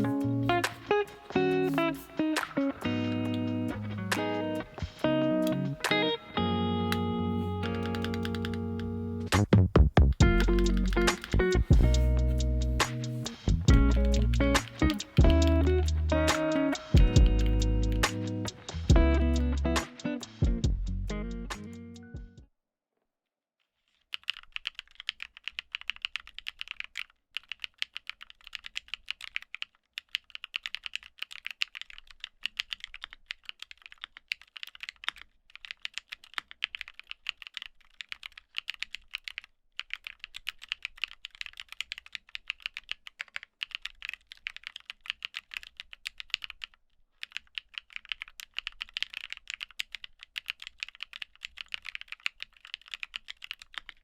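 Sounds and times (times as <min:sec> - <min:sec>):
mechanical keyboard typing: 0:07.6 - 0:08.9, 0:10.3 - 0:11.7, 0:24.2 - 0:54.0.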